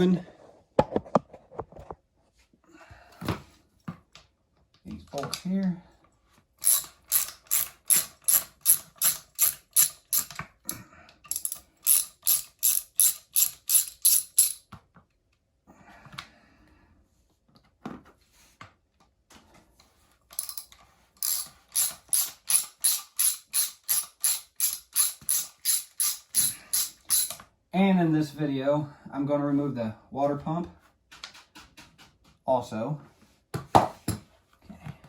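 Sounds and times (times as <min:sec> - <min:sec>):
ratchet wrench clicking: 0:06.6 - 0:10.4, 0:11.3 - 0:14.6, 0:20.3 - 0:27.4.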